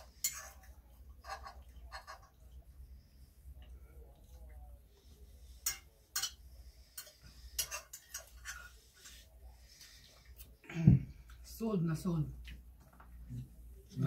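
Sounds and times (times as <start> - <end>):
cutlery clinking on plates: 5.6 - 9.1.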